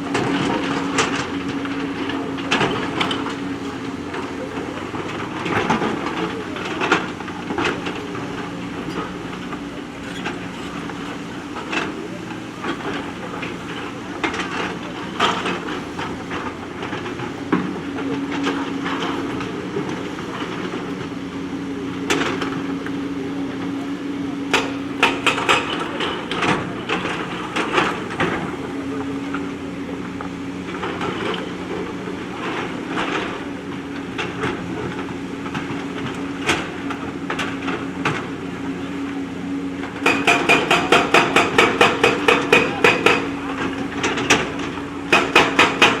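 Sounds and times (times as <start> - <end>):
diesel engine running: 0.0 - 46.0
bucket clanking against stones: 0.1 - 29.6.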